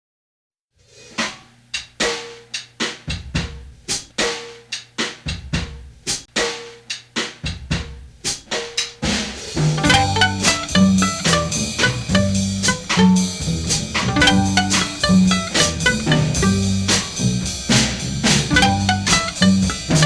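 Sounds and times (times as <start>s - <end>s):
ringing snare drum: 1.2s - 20.0s
cymbals: 9.1s - 20.0s
bass drum: 9.6s - 20.0s
bass guitar: 9.7s - 20.0s.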